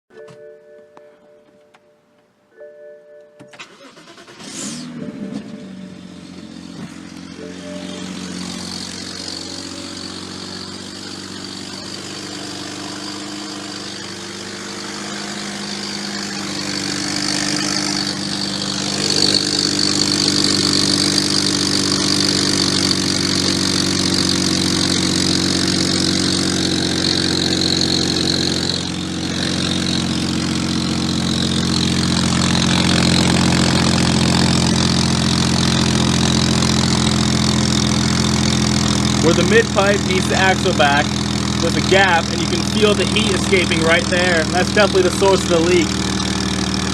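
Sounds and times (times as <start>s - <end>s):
car engine idling: 3.6s - 46.9s.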